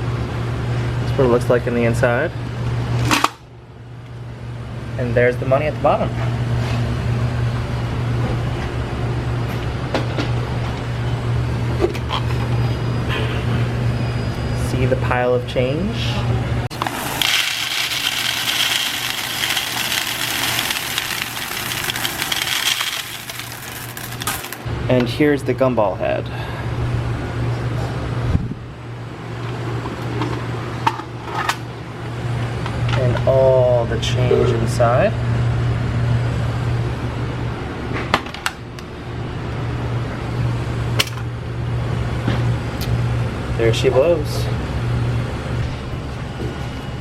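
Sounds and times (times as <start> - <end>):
steady background hum: 0.0 - 47.0
candy machine parts clicking: 17.2 - 24.7
coins clinking and rattling: 17.2 - 24.7.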